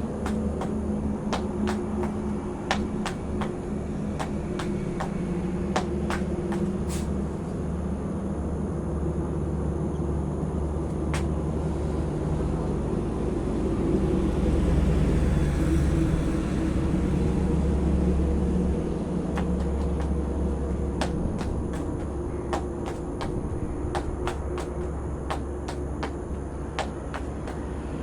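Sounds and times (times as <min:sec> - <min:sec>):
low engine rumble: 0:00.0 - 0:28.0.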